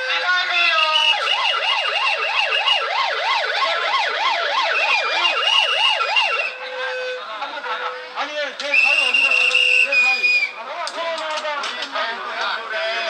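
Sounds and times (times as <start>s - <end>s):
police siren yelping: 0.8s - 7.2s.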